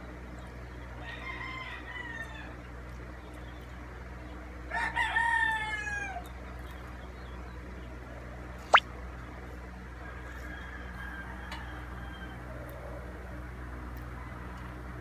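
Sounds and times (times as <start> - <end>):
rooster crowing: 1.0 - 2.4.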